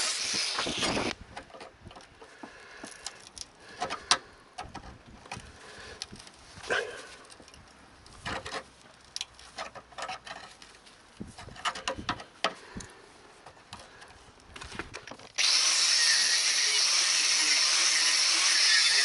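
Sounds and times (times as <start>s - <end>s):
light handling clicks and knocks: 1.3s - 6.4s, 7.2s - 15.4s.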